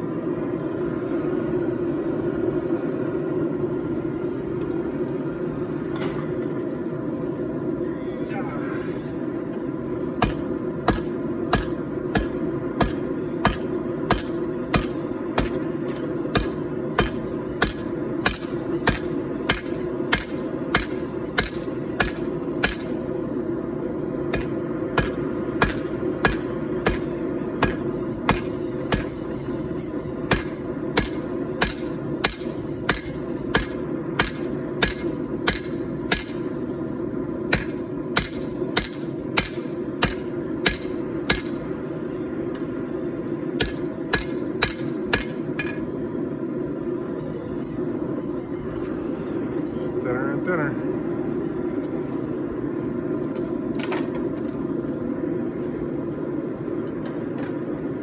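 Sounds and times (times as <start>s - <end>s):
hammer striking steel on anvil: 10.2s - 23.0s, 24.3s - 29.3s, 30.3s - 36.5s, 37.5s - 41.7s, 43.6s - 45.8s.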